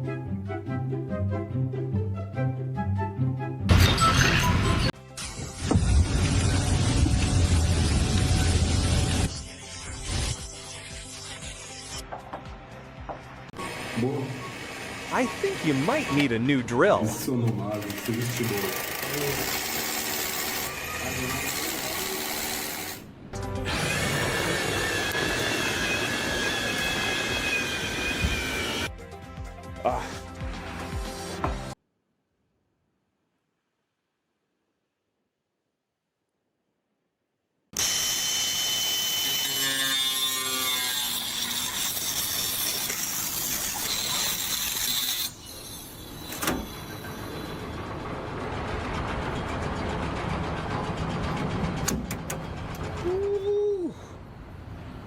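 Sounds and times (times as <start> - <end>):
background music: 0.0 - 6.1, 10.4 - 18.0, 23.4 - 24.3, 28.9 - 31.8
power tool running: 13.6 - 16.2, 17.5 - 28.9, 37.8 - 47.8.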